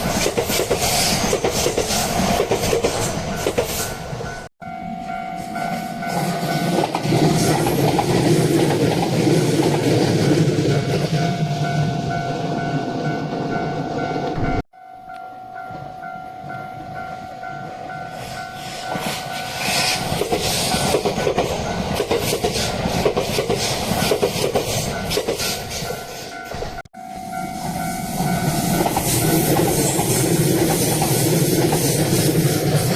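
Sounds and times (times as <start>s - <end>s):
electric train passing: 0.0s - 32.9s
level-crossing alarm bell: 3.3s - 7.6s, 10.3s - 19.8s, 24.8s - 30.7s
train wheels clattering over rail joints: 18.6s - 25.8s.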